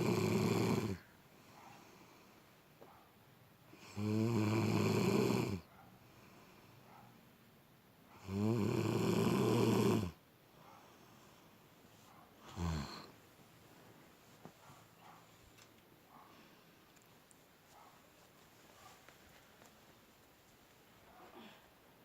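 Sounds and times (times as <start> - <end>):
person snoring: 0.0 - 1.0, 3.8 - 5.6, 8.2 - 10.2, 12.5 - 13.2.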